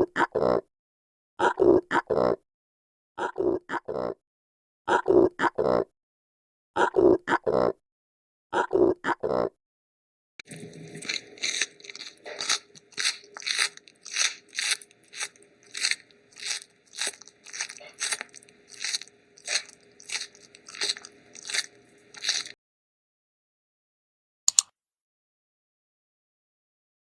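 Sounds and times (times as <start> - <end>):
animal chewing: 10.4 - 22.6.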